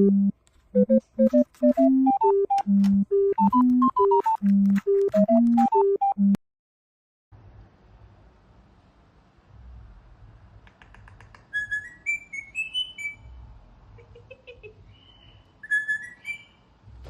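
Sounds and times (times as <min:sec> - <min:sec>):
bird clicks: 0:10.6 - 0:11.5
bird whistling: 0:11.5 - 0:13.4, 0:15.1 - 0:16.7
soft bird chirps: 0:11.5 - 0:13.4, 0:14.9 - 0:16.7.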